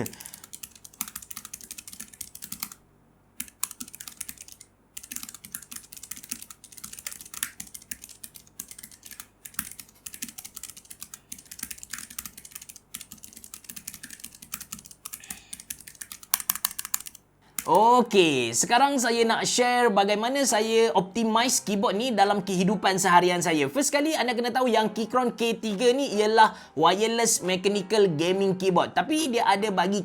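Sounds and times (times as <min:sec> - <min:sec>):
typing on mechanical keyboard: 0:00.0 - 0:02.8, 0:03.4 - 0:17.8.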